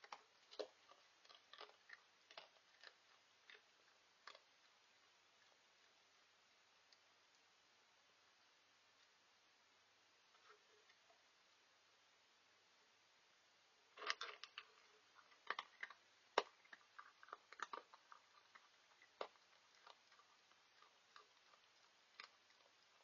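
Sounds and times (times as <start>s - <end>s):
animal eating dry food: 0.0s - 7.5s, 13.9s - 23.0s.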